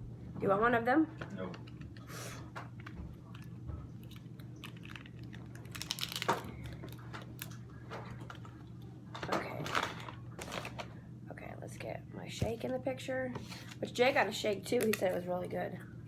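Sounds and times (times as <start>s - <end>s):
steady low hum: 0.0s - 16.0s
paper and cardboard packaging rustling: 4.0s - 8.6s, 9.2s - 10.9s.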